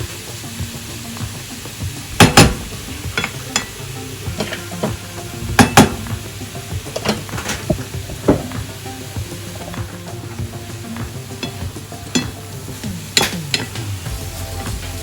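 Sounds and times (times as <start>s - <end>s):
food sizzling in a pan: 0.0s - 15.0s
sharp knocks: 2.1s - 3.7s, 4.4s - 6.2s, 7.3s - 8.7s
spatulas scraping a pan: 3.1s - 8.6s.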